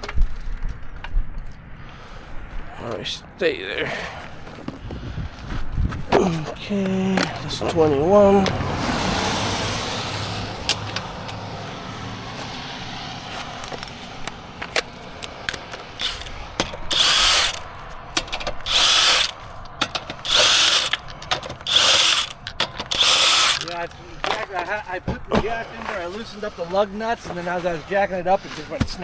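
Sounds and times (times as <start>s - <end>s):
socket tool ratcheting: 10.6s - 11.4s, 13.6s - 24.4s.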